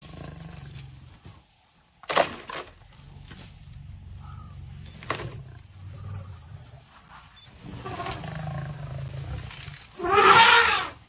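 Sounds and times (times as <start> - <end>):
lion growling: 0.0 - 1.1, 3.0 - 6.9, 7.6 - 10.2.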